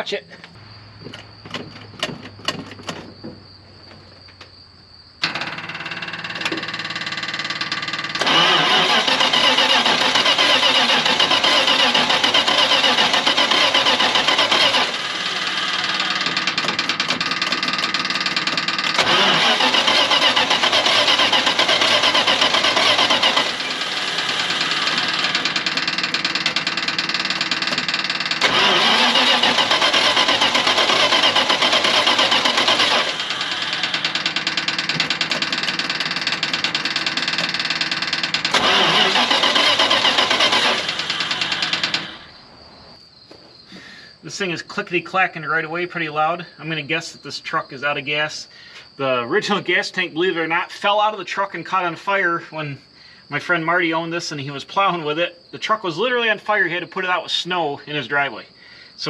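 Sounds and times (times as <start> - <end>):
truck engine clattering: 0.4 - 4.4, 5.2 - 42.4.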